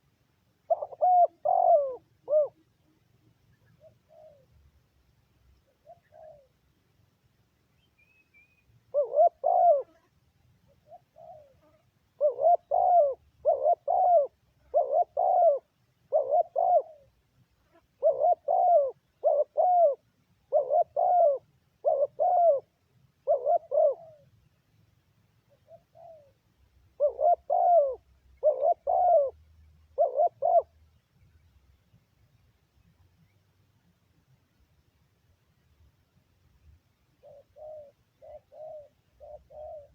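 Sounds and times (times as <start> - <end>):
dove cooing: 0.6 - 3.0, 3.6 - 4.6, 5.6 - 6.6, 8.9 - 10.1, 10.7 - 17.2, 17.9 - 24.3, 25.5 - 30.8, 37.2 - 39.9.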